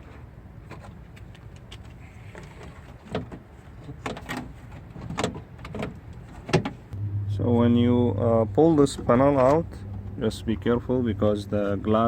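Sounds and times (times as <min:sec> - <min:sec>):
steady low hum: 0:06.9 - 0:12.0.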